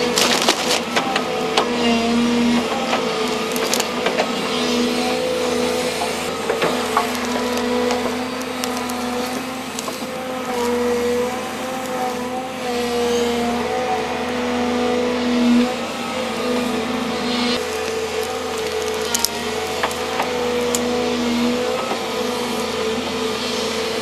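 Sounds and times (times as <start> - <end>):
wood cracking and snapping: 0.0 - 1.7, 2.9 - 4.3, 6.5 - 10.8, 17.6 - 20.9
excavator diesel engine running: 0.0 - 12.7, 13.4 - 23.2.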